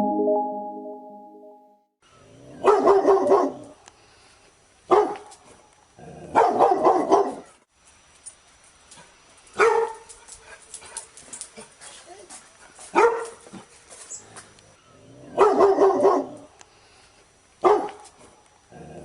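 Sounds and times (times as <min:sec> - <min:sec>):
dog barking: 0:02.6 - 0:03.7, 0:04.9 - 0:05.3, 0:06.3 - 0:07.6, 0:09.6 - 0:10.0, 0:12.9 - 0:13.4, 0:15.3 - 0:16.5, 0:17.6 - 0:18.0.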